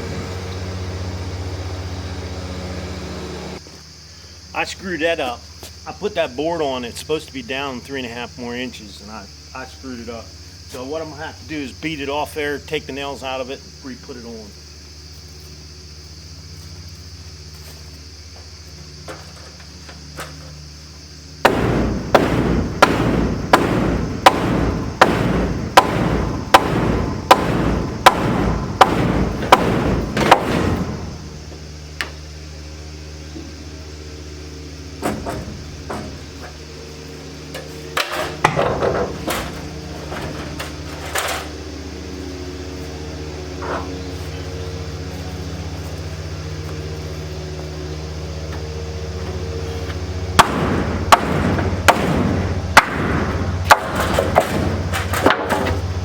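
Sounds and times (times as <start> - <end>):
steady low hum: 0.0 - 56.0
hammer pounding wooden board: 21.4 - 31.4, 50.4 - 55.8
scattered knocks: 21.4 - 31.4, 50.4 - 55.9.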